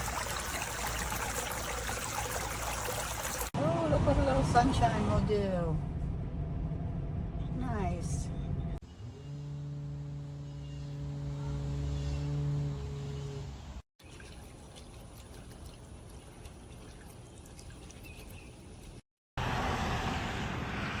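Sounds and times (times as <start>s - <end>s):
fountain water splashing: 0.0s - 3.6s
steady low hum: 8.2s - 13.8s.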